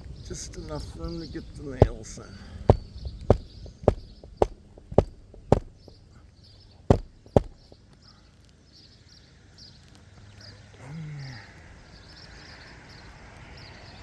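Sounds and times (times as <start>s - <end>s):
hammer striking roofing nails: 2.7s - 6.0s, 6.9s - 7.7s.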